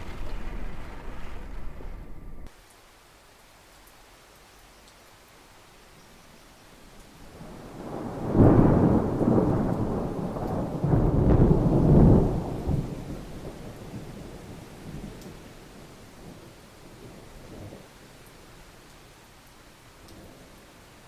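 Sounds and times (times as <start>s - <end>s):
thunder rumbling: 0.0s - 2.5s, 7.3s - 17.8s
rain hissing: 0.0s - 21.0s.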